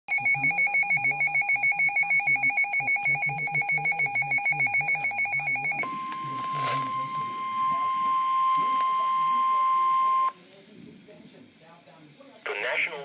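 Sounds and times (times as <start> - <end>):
high-pitched beeping alert tones: 0.1 - 10.3.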